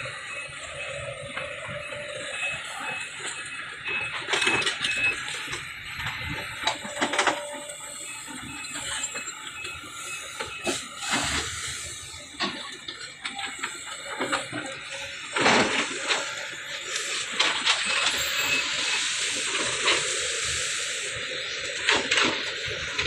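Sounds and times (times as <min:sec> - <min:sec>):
excavator diesel engine under load: 0:00.0 - 0:23.0
high beeps: 0:00.1 - 0:15.4.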